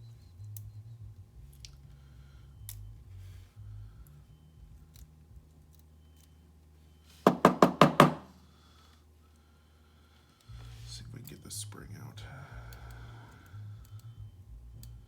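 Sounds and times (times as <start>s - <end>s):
metal lock core knocking: 7.3s - 8.3s.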